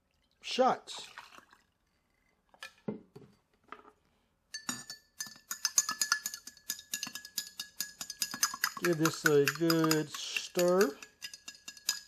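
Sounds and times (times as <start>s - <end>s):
spoon clinking in glass: 4.5s - 12.0s.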